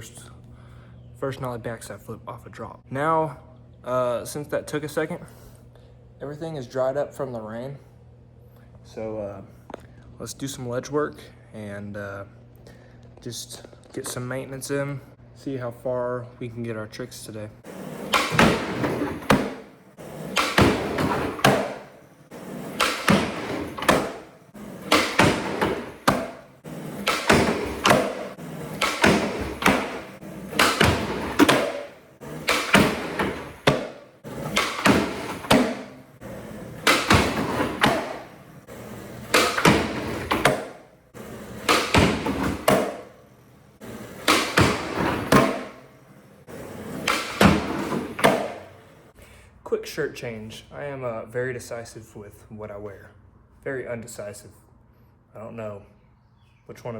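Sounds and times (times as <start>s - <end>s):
skateboard wheels rolling on concrete: 17.6s - 49.2s
skateboard tail pops and landings: 17.7s - 43.2s, 43.8s - 45.9s, 46.5s - 48.8s.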